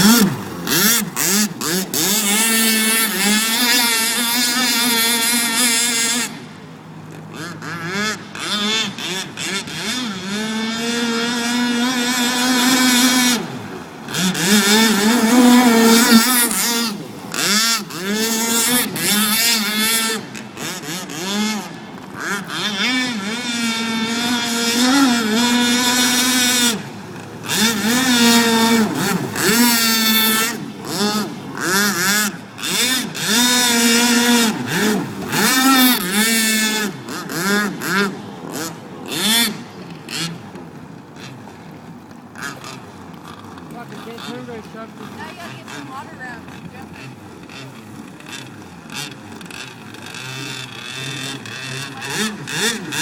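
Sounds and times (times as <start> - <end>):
electric motor whining: 7.3 - 37.9.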